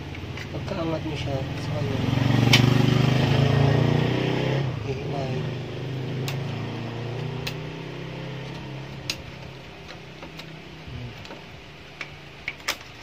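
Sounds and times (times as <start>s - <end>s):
clicks of plastic and metal parts: 12.0s - 13.0s.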